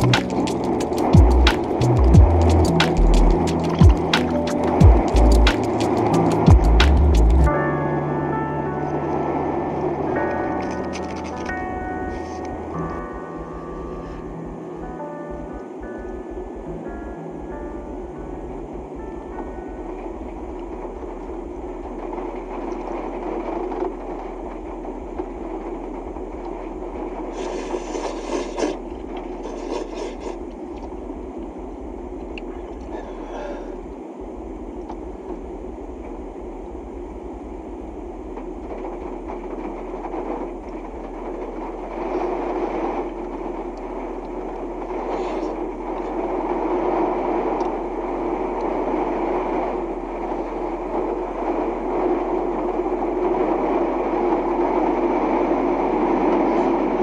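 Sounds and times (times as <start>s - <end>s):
road and engine rumble: 0.0s - 57.0s
brief scraping rushes: 27.3s - 28.8s.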